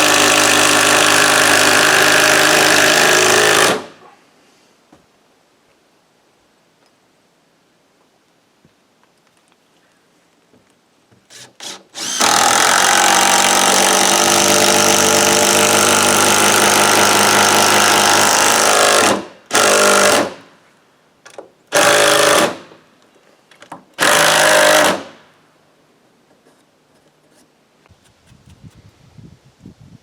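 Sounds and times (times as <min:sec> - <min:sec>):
electric power drill running: 0:00.0 - 0:03.8, 0:11.3 - 0:20.2.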